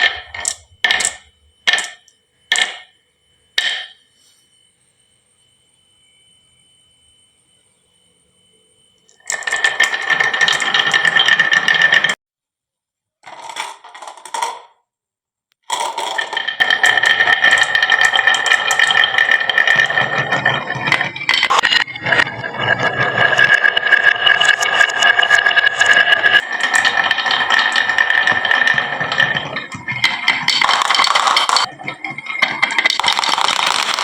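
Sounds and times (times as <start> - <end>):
marbles rattling down wooden track: 0.0 - 2.9, 3.6 - 4.0, 9.1 - 12.2, 13.2 - 14.7, 15.7 - 34.0.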